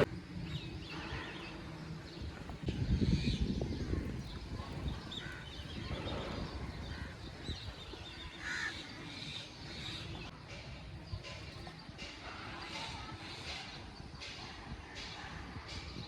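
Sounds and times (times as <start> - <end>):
low rumble: 0.0 - 0.9
crows cawing: 8.4 - 9.0.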